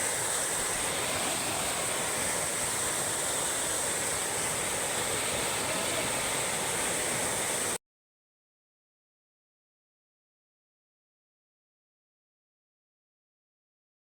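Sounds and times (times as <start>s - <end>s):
waterfall rushing: 0.0s - 7.8s.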